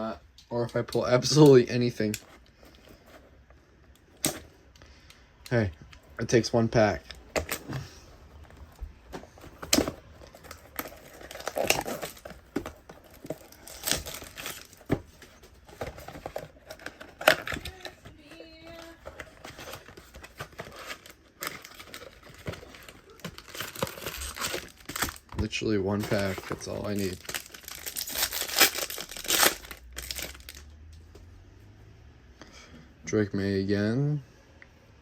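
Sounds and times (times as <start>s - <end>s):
cards rustling and clicking: 6.9s - 30.7s
wrapper tearing and crinkling: 10.3s - 12.4s, 13.0s - 14.9s, 16.6s - 25.3s, 26.0s - 30.6s.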